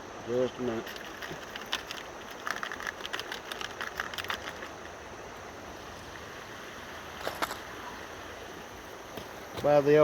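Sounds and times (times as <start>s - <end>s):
fishing tackle clicking and rattling: 0.8s - 5.0s
river water rushing: 4.5s - 10.0s.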